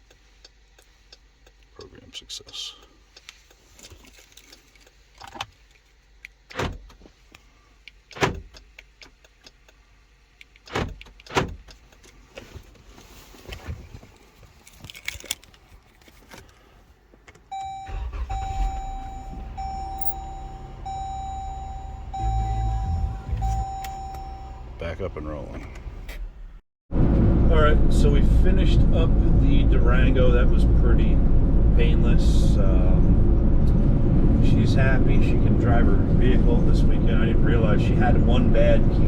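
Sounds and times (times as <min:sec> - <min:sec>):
car engine starting and running: 0:06.2 - 0:07.2, 0:07.9 - 0:13.2, 0:17.3 - 0:39.0
dashboard chime: 0:17.6 - 0:24.8.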